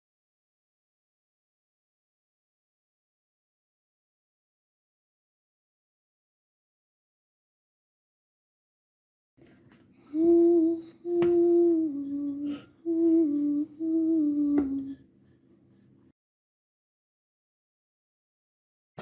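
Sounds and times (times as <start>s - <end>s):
person humming a tune: 10.0s - 15.0s.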